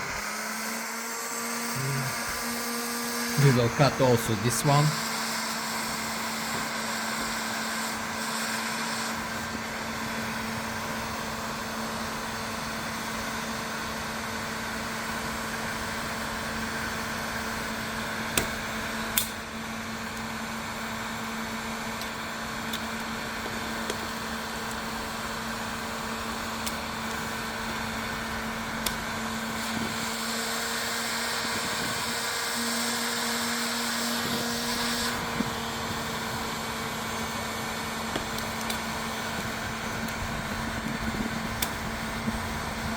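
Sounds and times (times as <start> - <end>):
heat gun fan humming: 0.0 - 42.9.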